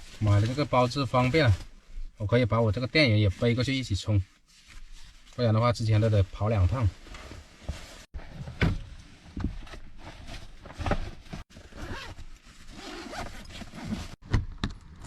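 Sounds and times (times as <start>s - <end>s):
rustling and scraping of gear: 0.0s - 2.2s, 2.9s - 14.2s
zipper pulls: 11.6s - 14.2s.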